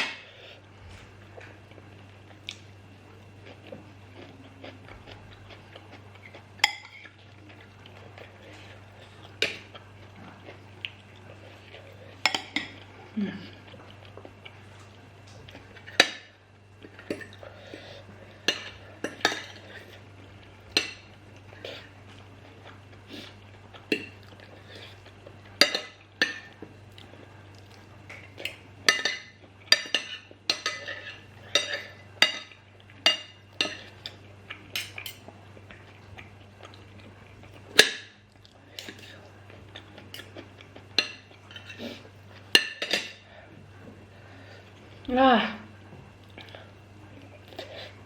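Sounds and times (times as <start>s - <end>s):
cutlery clinking on a plate: 28.4s - 33.9s.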